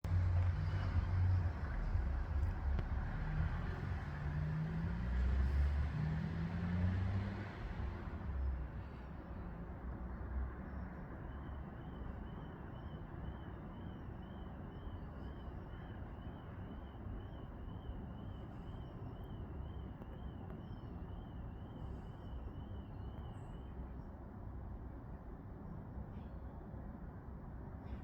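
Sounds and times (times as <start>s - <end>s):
quiet street background: 0.0s - 28.0s
vehicle passing by: 0.1s - 8.8s.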